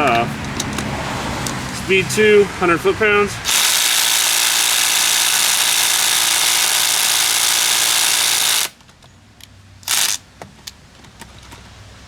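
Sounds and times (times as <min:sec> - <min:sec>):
impact wrench hammering: 0:03.5 - 0:08.8.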